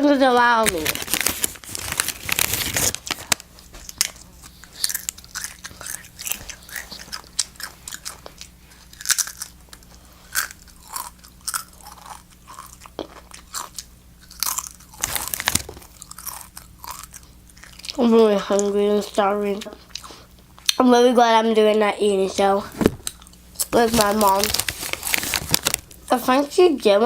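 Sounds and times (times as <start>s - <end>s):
chips crunching: 0.4s - 18.7s, 23.0s - 26.0s.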